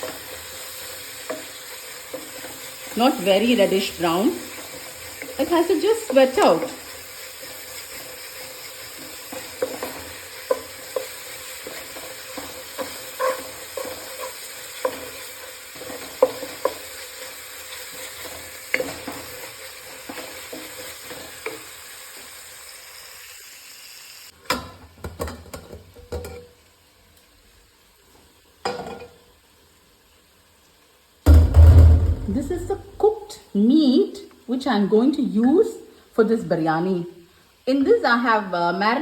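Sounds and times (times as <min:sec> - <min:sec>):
spatula scraping a pan: 0:00.0 - 0:22.3
onions sizzling in a pan: 0:00.0 - 0:24.4, 0:26.2 - 0:31.4, 0:32.2 - 0:39.0.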